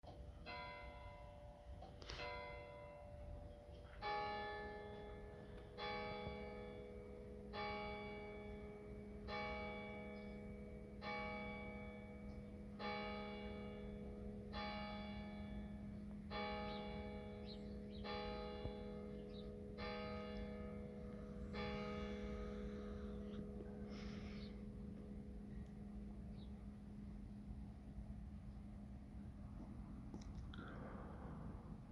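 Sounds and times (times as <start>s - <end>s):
low steady hum: 0.1s - 31.9s
lower bell striking: 9.3s - 23.8s.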